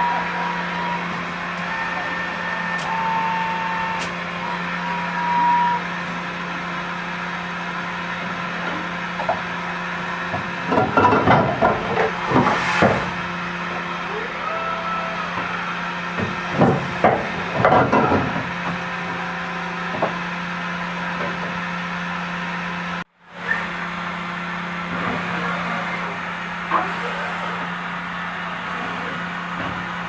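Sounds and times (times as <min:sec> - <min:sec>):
low machine hum: 0:00.0 - 0:30.0
machine knocks and clunks: 0:10.3 - 0:13.2, 0:16.2 - 0:18.8.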